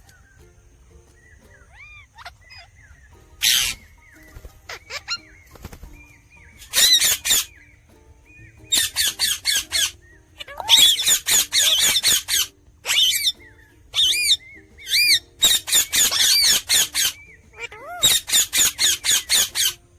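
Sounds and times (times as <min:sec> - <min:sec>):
parrot screeching: 0:01.7 - 0:02.7, 0:03.4 - 0:03.8, 0:04.7 - 0:05.2, 0:06.6 - 0:07.6, 0:08.7 - 0:19.8.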